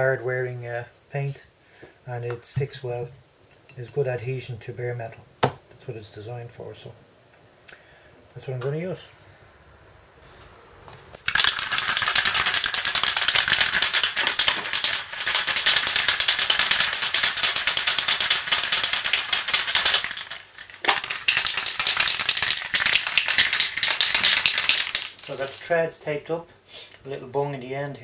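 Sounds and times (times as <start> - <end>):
aerosol can shaken: 11.2 - 25.7
mixing ball rattling: 11.2 - 25.8.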